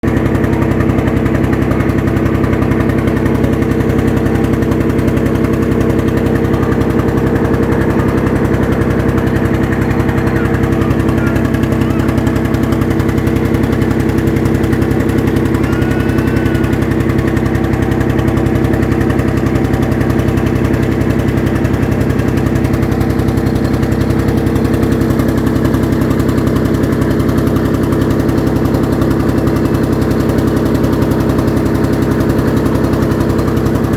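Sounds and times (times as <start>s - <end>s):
boat engine running: 0.0s - 33.9s.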